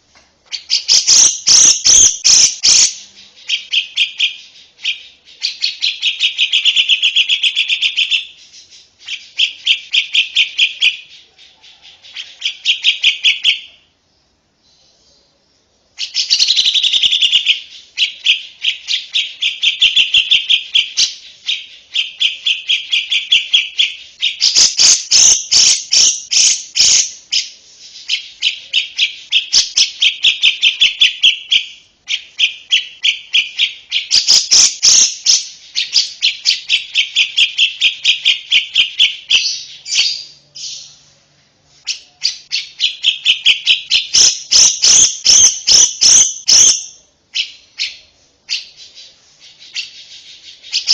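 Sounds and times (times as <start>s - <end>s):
lovebird chattering chirps: 0.5s - 13.8s, 16.0s - 41.0s, 41.8s - 50.9s.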